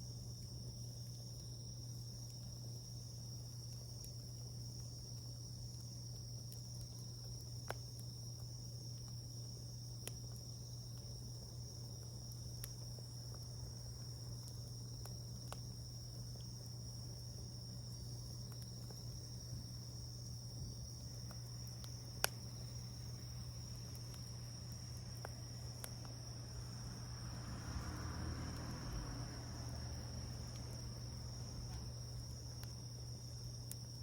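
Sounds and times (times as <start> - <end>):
crickets trilling: 0.0 - 34.0
low steady hum: 0.0 - 34.0
wood fire crackling and popping: 0.0 - 34.0.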